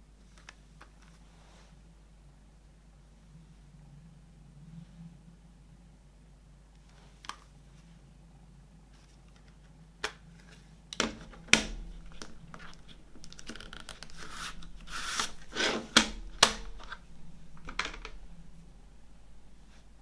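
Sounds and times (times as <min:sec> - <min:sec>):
packaging tearing and crinkling: 0:11.6 - 0:17.0.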